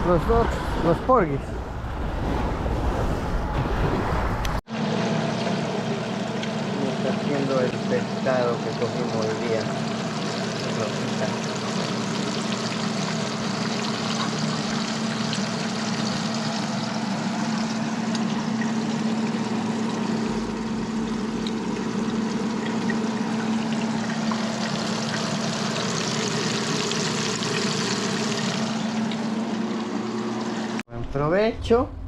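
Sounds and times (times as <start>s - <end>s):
low hum: 0.0s - 7.1s
fish sizzling in a pan: 9.9s - 17.8s, 24.0s - 28.9s.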